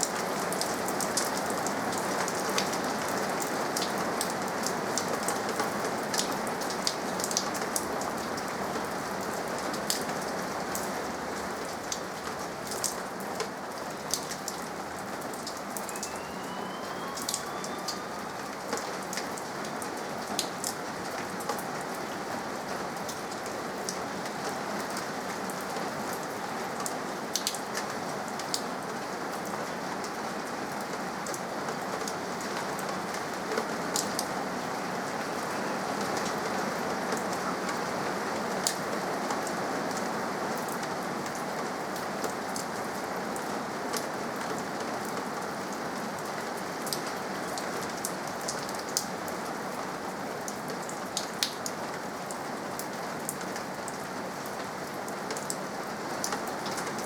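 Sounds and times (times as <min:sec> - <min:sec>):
steady rain hiss: 0:00.0 - 0:57.0
raindrops ticking close by: 0:43.4 - 0:57.0.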